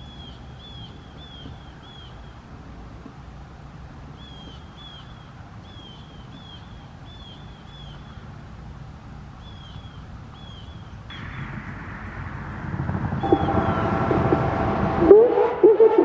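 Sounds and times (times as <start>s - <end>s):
bird chirping: 0.0s - 2.4s, 4.2s - 8.2s
low background rumble: 0.0s - 16.0s
hiss of noise: 11.1s - 16.0s.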